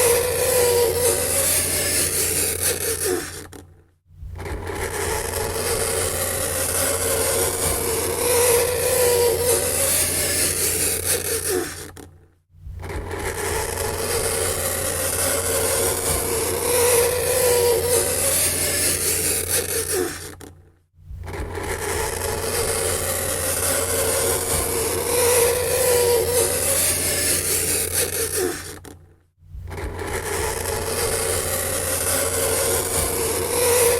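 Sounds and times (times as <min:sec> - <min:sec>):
low hum: 0:04.2 - 0:09.8, 0:13.6 - 0:18.3, 0:22.0 - 0:27.1, 0:29.5 - 0:33.9.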